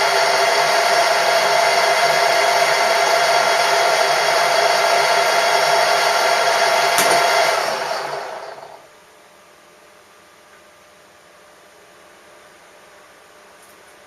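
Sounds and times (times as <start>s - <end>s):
machine tool motor whining: 0.0s - 8.8s.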